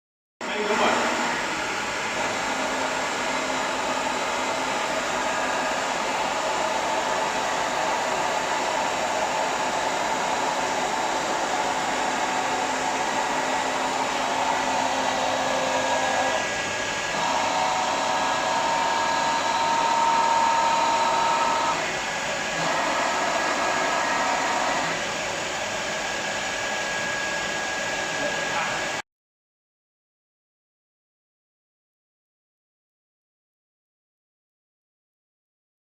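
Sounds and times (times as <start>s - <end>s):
milling machine whirring: 0.4s - 29.0s.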